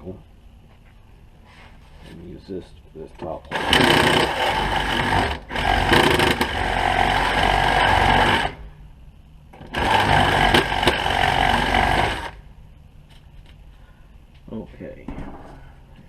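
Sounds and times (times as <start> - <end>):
power drill drilling: 3.5 - 8.6, 9.6 - 12.4.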